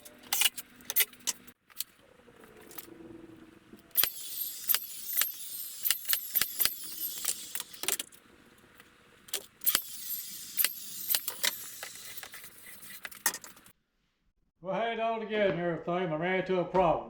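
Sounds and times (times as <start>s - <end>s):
small metal parts clinking: 3.9s - 8.2s, 9.3s - 13.7s.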